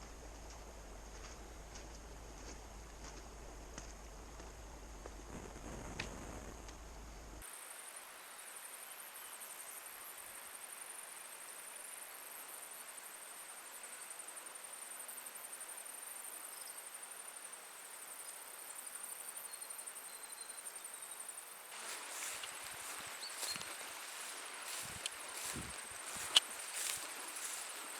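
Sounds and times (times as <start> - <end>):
insect chirring: 18.0 - 27.9
rushing water hiss: 21.6 - 27.9.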